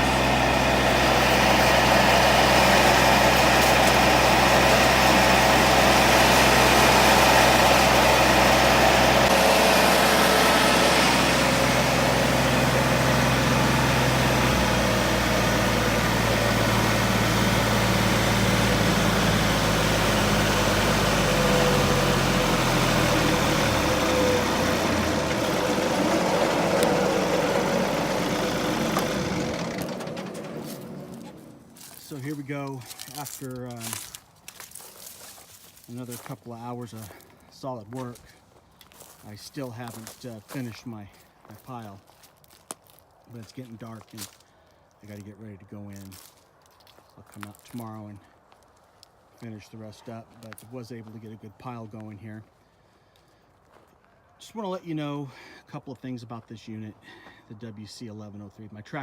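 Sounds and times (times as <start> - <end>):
chipper shredder whirring: 0.0 - 35.2
tractor diesel engine running: 0.0 - 44.4.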